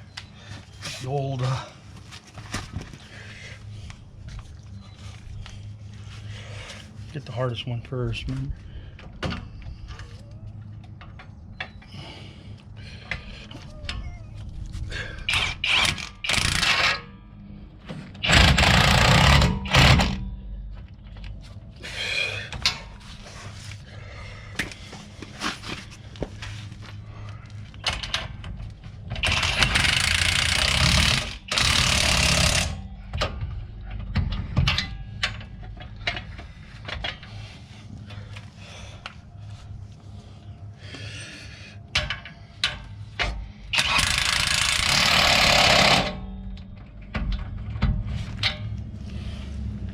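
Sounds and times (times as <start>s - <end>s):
power wrench running bolts: 15.3s - 17.0s, 18.2s - 20.2s, 29.2s - 33.3s, 43.7s - 46.3s
tools and parts clicking and knocking: 15.3s - 17.1s, 17.9s - 21.4s, 27.8s - 37.4s, 41.9s - 48.9s.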